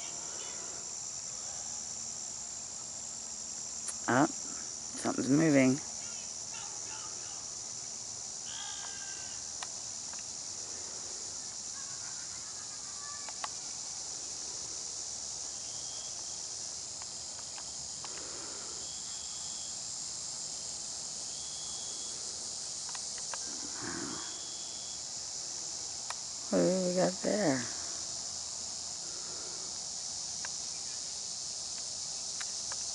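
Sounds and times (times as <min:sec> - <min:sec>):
high insect chirps: 0:00.0 - 0:32.9
insects chorus: 0:00.0 - 0:32.9
sharp clicks: 0:13.2 - 0:13.6, 0:22.8 - 0:23.4.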